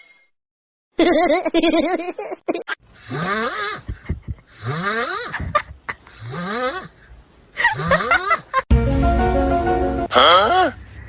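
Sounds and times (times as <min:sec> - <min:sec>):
loud snoring: 0:03.0 - 0:08.6.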